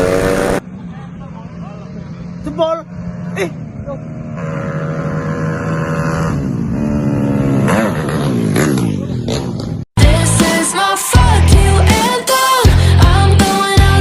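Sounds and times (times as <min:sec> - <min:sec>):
racing motorcycles passing by: 0:00.0 - 0:09.8
loud rock music: 0:10.0 - 0:14.0.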